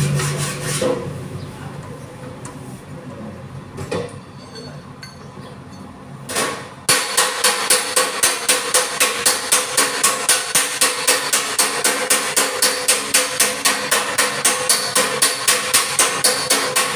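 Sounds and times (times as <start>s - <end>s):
hammer striking sheet metal: 6.3s - 16.9s.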